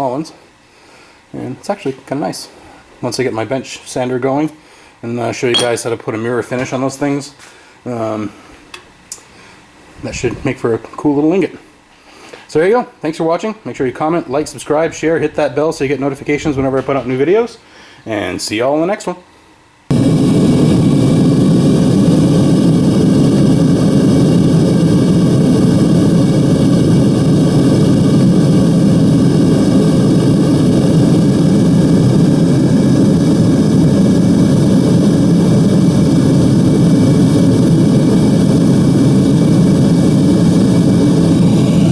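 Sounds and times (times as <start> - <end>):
furnace torch and blower rushing: 7.2 - 10.7, 19.9 - 41.9.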